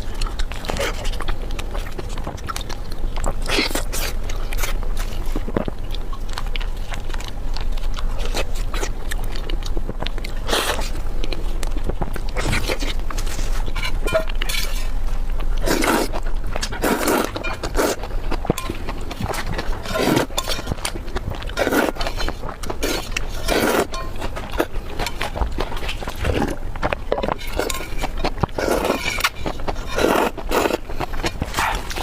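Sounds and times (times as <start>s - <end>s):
steady low hum: 0.0s - 32.0s
wet chewing: 0.0s - 32.0s.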